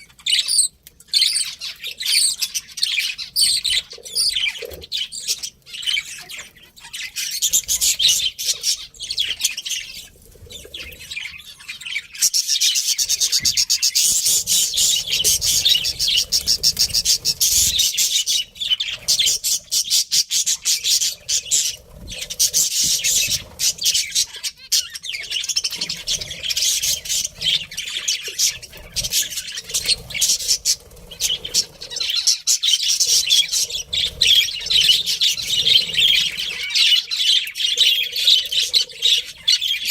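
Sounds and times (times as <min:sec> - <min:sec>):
budgerigars chirping and warbling: 0:00.0 - 0:39.9.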